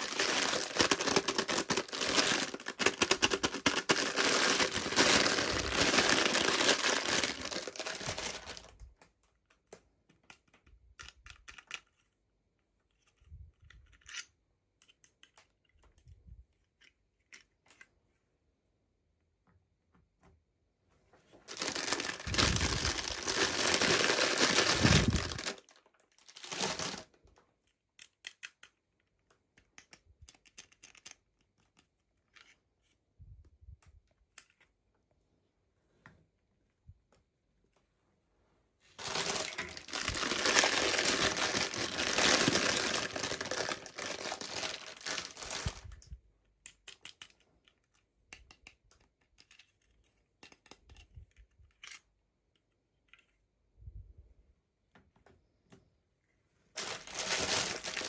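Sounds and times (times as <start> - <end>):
packaging crinkled and torn: 0.0 - 8.8, 21.5 - 27.2, 39.0 - 46.0, 56.8 - 58.0
small clicks and taps: 8.9 - 12.0, 12.9 - 17.9, 46.4 - 53.4.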